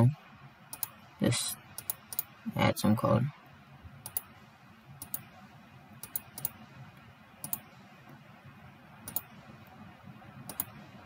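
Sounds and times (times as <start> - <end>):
faint low hum: 0.0 - 11.0
mouse and keyboard clicks: 4.0 - 4.3, 5.0 - 5.3, 6.0 - 6.6, 7.4 - 7.6, 9.0 - 9.3, 10.5 - 10.8.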